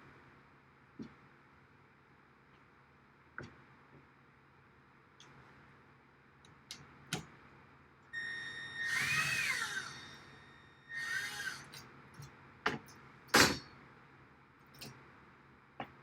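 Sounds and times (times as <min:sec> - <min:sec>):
power drill motor whine: 0:08.2 - 0:11.8.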